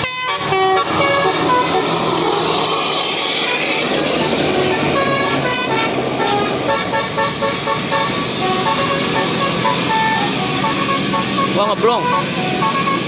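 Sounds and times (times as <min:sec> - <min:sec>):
bus horn playing a tune: 0:00.0 - 0:02.2, 0:03.4 - 0:13.0
road noise: 0:00.0 - 0:13.0.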